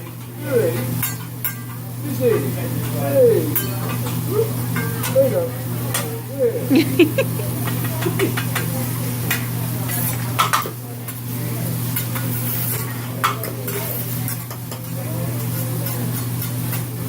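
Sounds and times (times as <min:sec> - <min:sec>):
food sizzling on a griddle: 0:00.0 - 0:17.0
steady low hum: 0:00.0 - 0:17.0
metal spatulas scraping steel: 0:12.0 - 0:16.9.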